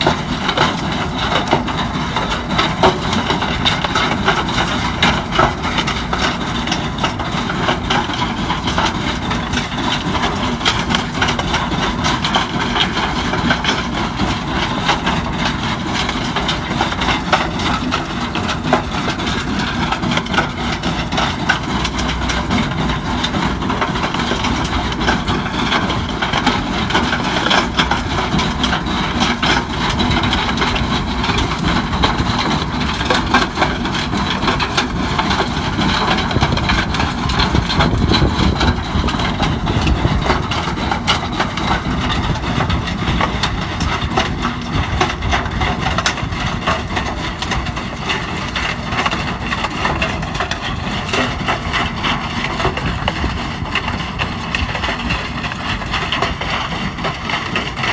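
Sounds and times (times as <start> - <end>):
tractor engine running: 0.0 - 57.9.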